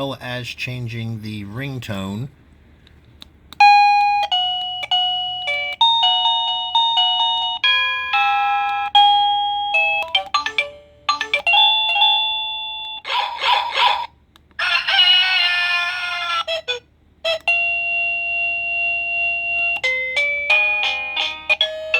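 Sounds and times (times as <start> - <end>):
electronic doorbell chime melodies: 3.6 - 13.0, 17.3 - 21.9.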